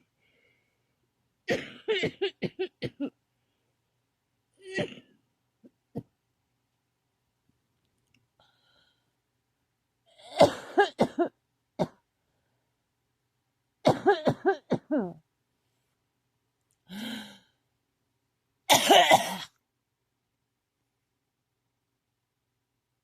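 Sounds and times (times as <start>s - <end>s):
person coughing: 1.5s - 3.1s, 4.6s - 5.1s, 10.2s - 12.0s, 13.9s - 15.2s, 18.7s - 19.5s.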